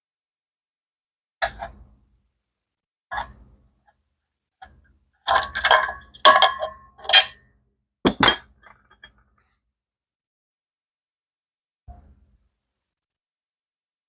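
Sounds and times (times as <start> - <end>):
metal tools clinking: 5.3 - 7.3.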